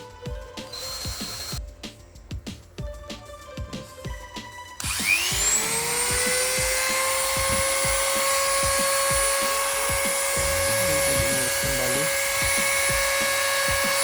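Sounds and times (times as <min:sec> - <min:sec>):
angle grinder motor whine: 0:00.6 - 0:01.6, 0:04.8 - 0:14.0.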